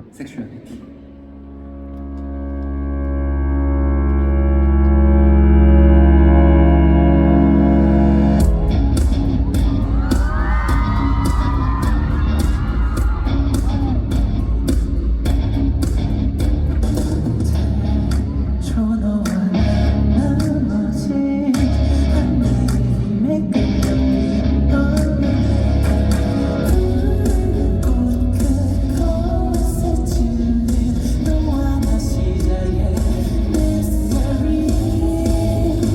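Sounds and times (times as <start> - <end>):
pop song with heavy bass beat: 8.4 - 35.9
lead vocal singing: 18.4 - 35.9.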